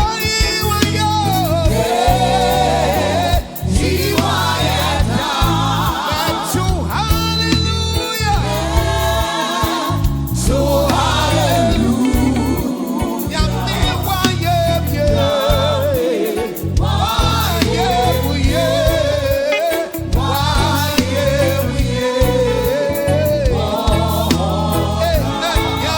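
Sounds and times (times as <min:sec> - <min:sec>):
gospel music with choir and band: 0:00.0 - 0:25.9.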